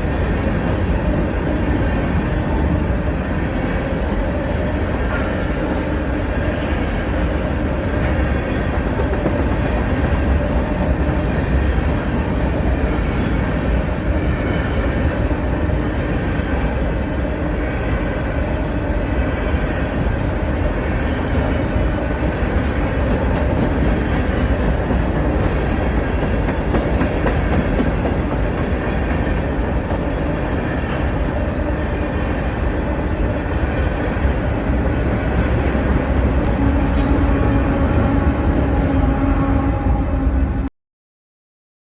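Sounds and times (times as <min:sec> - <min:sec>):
train rumbling on rails: 0:00.0 - 0:40.7
wheels clickety-clack over track: 0:04.9 - 0:15.5, 0:20.0 - 0:32.6, 0:34.0 - 0:40.2.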